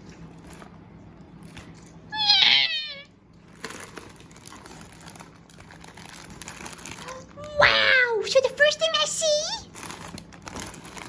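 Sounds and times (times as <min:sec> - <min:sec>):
high wavering vocal squeal: 0:02.2 - 0:03.1
packaging crinkling: 0:03.4 - 0:11.0.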